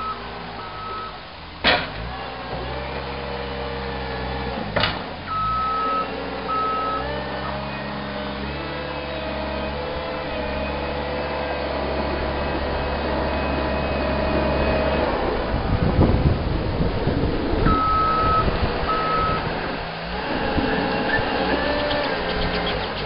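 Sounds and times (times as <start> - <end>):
backup alarm beeps: 0.0 - 1.2, 5.3 - 7.6, 17.7 - 19.4
diesel engine running: 0.0 - 23.0
knocks and clunks: 1.6 - 2.6, 4.6 - 5.6.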